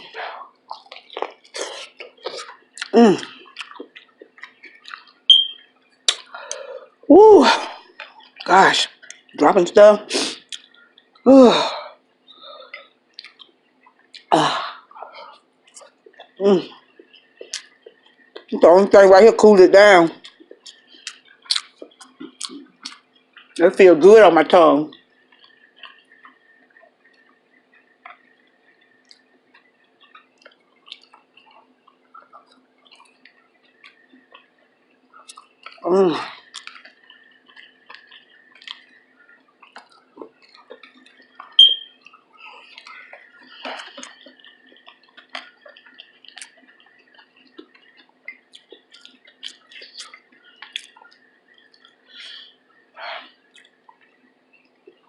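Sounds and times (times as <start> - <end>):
faint steady hum: 0.0 - 55.0
mouth clicks of chewing: 0.7 - 6.6, 12.7 - 14.3, 17.0 - 18.5, 20.2 - 23.6, 25.3 - 34.5, 35.1 - 35.8, 36.4 - 52.4, 53.5 - 55.0.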